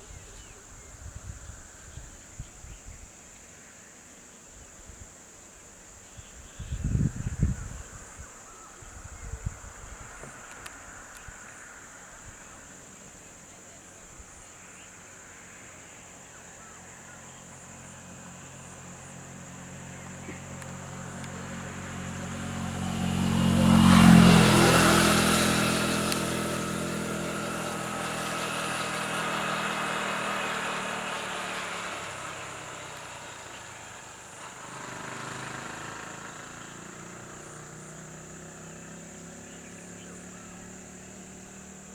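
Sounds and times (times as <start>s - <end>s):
vehicle engine passing by: 17.0s - 41.9s.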